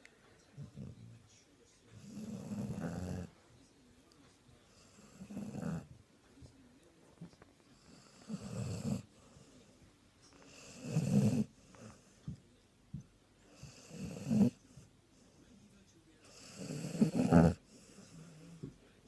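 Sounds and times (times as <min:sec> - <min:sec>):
dog snoring loudly: 0:01.9 - 0:03.3, 0:04.8 - 0:05.9, 0:07.9 - 0:09.1, 0:10.5 - 0:12.0, 0:13.5 - 0:14.6, 0:16.3 - 0:18.6.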